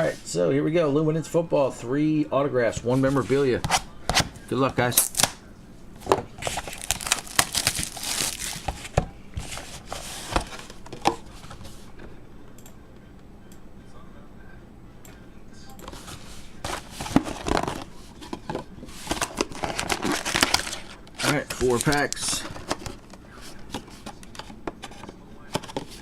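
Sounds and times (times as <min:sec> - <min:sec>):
plastic wrap crinkling: 0:06.4 - 0:09.0, 0:19.3 - 0:23.0.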